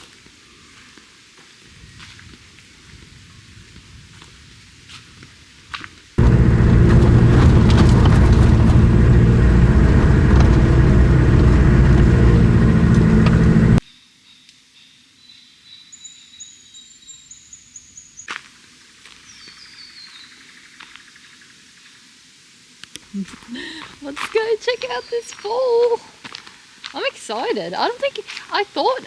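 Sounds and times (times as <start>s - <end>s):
vehicle engine running: 6.2s - 13.8s.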